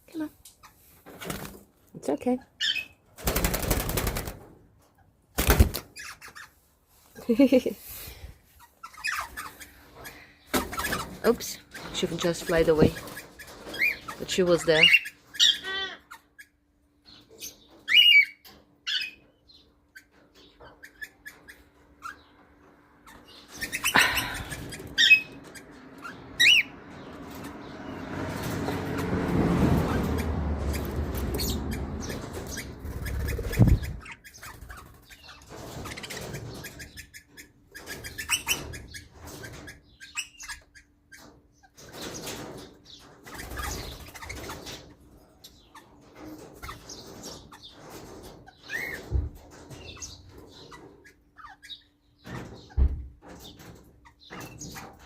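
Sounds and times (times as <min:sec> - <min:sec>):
parrots chirping: 0:02.6 - 0:03.0, 0:05.9 - 0:06.6, 0:08.6 - 0:27.2, 0:28.4 - 0:41.8, 0:49.8 - 0:52.7
rustling and flapping: 0:03.1 - 0:06.0.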